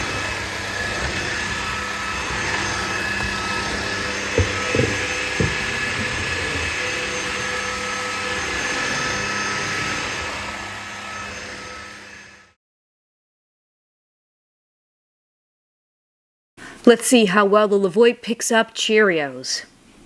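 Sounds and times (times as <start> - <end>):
vacuum cleaner running: 0.0 - 12.6
short knocks: 4.3 - 6.3.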